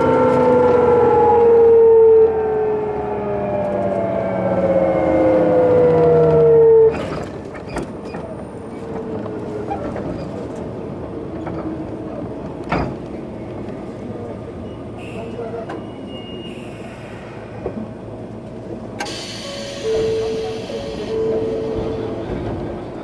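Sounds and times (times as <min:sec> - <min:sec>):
train inverter whining: 0:00.0 - 0:09.4, 0:15.1 - 0:23.0
train wheels rolling: 0:17.0 - 0:23.0.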